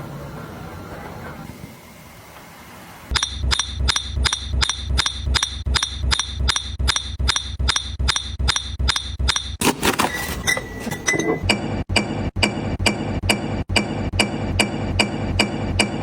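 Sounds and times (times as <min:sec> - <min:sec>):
steady low hum: 0:03.1 - 0:09.6
regular mechanical clicking: 0:03.1 - 0:16.0.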